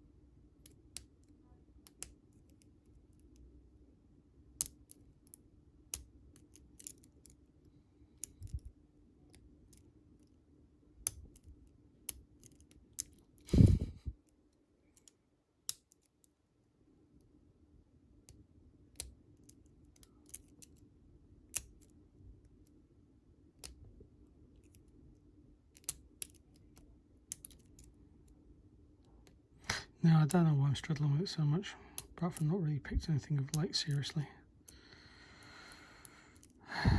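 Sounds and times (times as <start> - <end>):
lock picks clicking and scraping: 6.3 - 7.4, 12.1 - 13.4, 19.0 - 20.8, 25.7 - 28.0.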